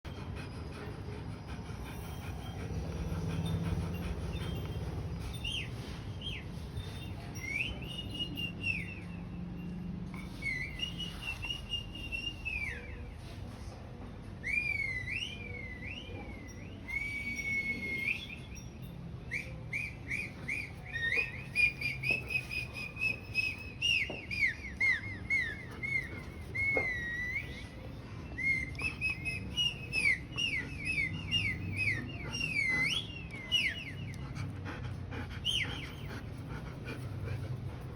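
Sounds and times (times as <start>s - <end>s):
high swooping whistles: 14.5s - 34.3s.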